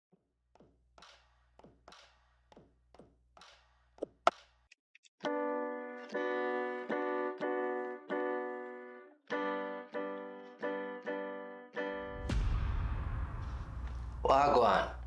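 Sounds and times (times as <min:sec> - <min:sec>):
electric piano chords: 0:05.2 - 0:12.2
electronic drum hits falling in pitch: 0:12.1 - 0:15.0.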